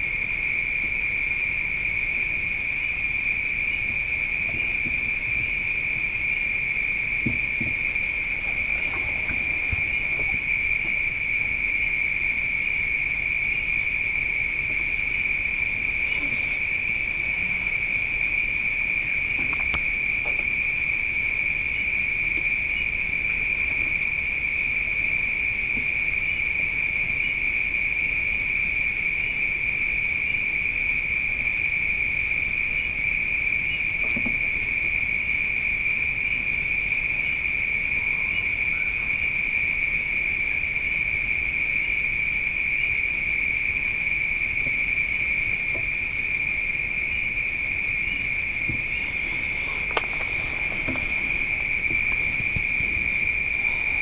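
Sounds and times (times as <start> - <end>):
crickets trilling: 0.0 - 54.0.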